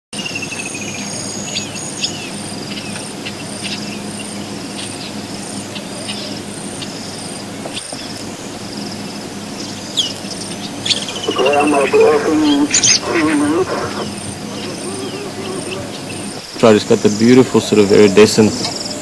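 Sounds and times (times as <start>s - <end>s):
faint low hum: 8.1s - 19.0s
insect high trills: 9.6s - 17.4s.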